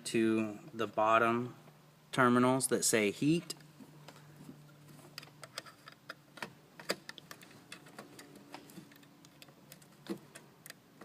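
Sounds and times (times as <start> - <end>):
faint steady hum: 0.0 - 11.0
wires clicking onto terminals: 5.1 - 11.0.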